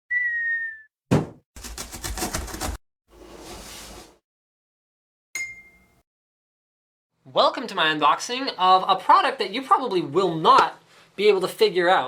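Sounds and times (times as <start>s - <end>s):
sharp thud: 1.1s - 2.8s
fast clatter of clicks: 1.6s - 2.8s.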